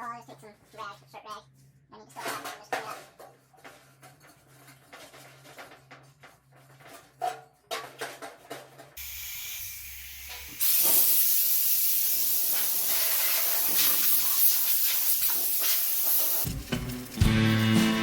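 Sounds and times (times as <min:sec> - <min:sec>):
loud spraying hiss: 0:09.0 - 0:16.5.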